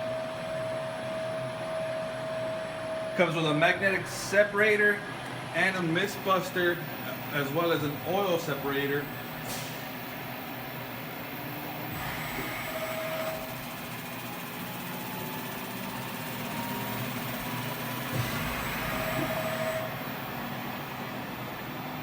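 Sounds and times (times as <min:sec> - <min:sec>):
grinder machine hum: 0:06.2 - 0:21.7.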